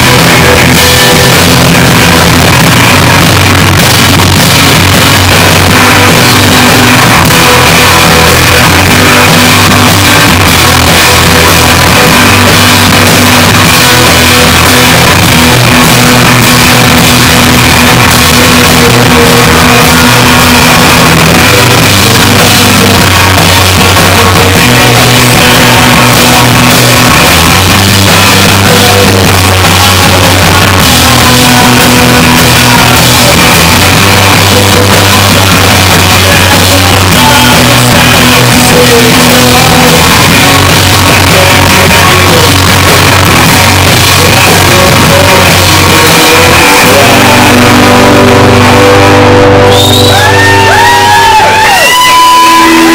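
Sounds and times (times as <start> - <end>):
distorted live rock band: 0.0 - 52.9
shouted vocals: 0.0 - 52.9.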